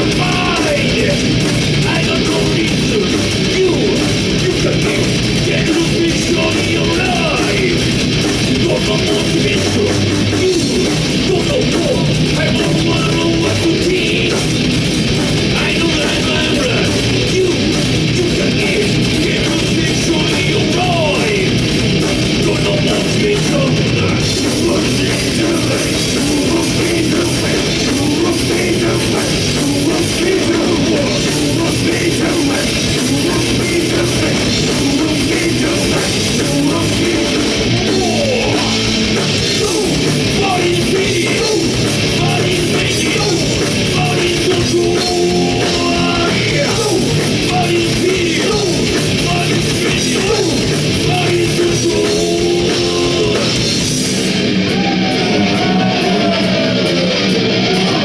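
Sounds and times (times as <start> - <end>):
person singing: 0.0 - 7.9, 15.5 - 53.7
distorted electric guitar: 0.0 - 58.0
drum kit: 0.0 - 58.0.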